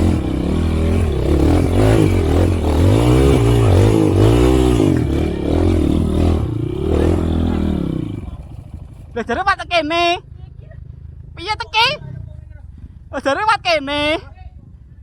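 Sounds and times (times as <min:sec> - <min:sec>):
motorcycle engine under load: 0:00.0 - 0:11.4.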